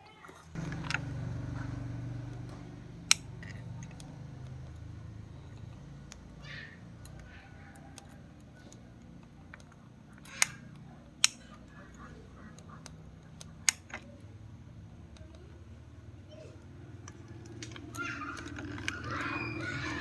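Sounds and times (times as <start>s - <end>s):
sharp clicks: 0.6s - 14.3s.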